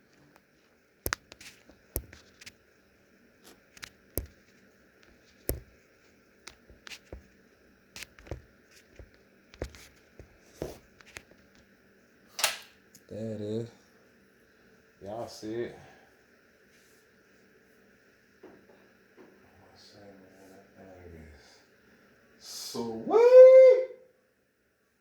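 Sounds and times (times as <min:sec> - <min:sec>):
box packaging clicks and taps: 0:05.4 - 0:05.7.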